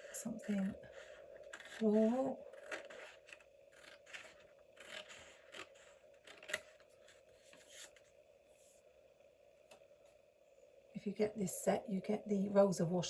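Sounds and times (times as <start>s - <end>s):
paper rustling: 0.9s - 8.1s.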